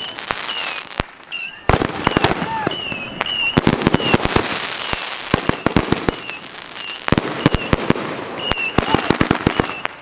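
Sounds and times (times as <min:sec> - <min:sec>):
fireworks bangs and pops: 0:00.0 - 0:10.0
fireworks crackling: 0:00.0 - 0:10.0
high firework whistles: 0:00.0 - 0:10.0.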